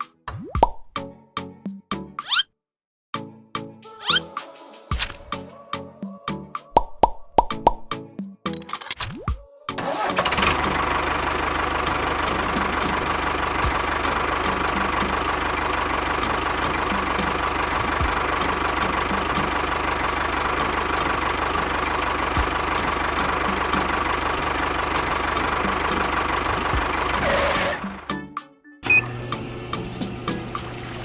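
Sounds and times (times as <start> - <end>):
small motor pulsing: 11.9 - 13.7, 16.2 - 18.5, 19.3 - 22.0, 23.8 - 25.8.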